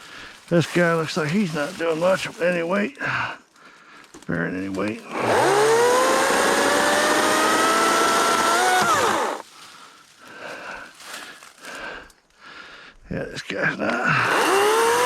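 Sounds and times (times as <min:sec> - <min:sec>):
electric chainsaw cutting branch: 0:05.0 - 0:09.4, 0:14.2 - 0:15.0.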